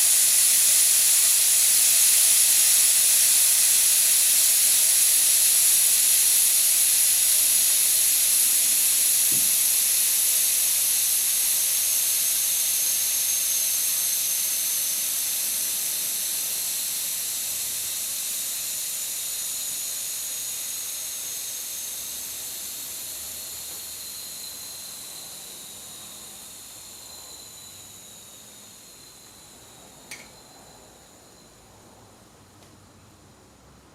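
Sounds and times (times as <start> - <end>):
air hissing out of tyre: 0.0 - 21.4.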